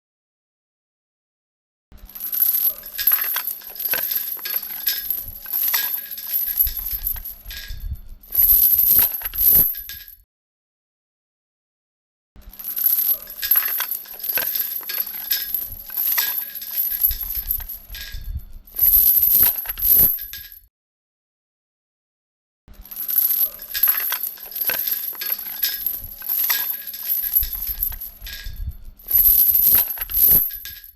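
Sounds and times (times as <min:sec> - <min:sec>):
metal chain links clinking: 0:02.1 - 0:10.2, 0:12.5 - 0:20.6, 0:22.8 - 0:30.9.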